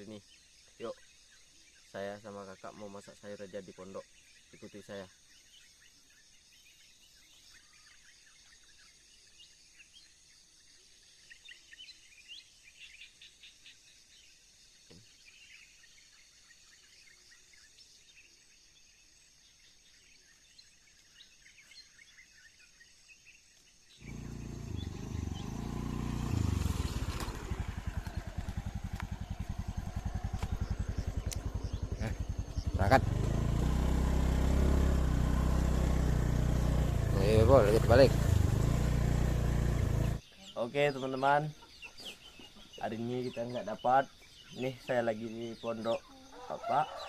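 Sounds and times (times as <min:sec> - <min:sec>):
bird chirps: 0:00.0 - 0:47.0
faint insect chirps: 0:00.0 - 0:47.0
small engine puttering: 0:24.0 - 0:40.2.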